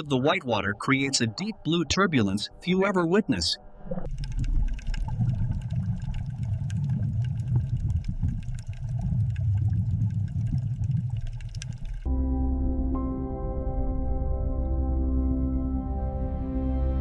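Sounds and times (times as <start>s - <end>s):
bubbles popping: 3.9s - 12.1s
underwater whitewater rumble: 4.0s - 12.1s
ambient music with held tones: 12.0s - 17.0s.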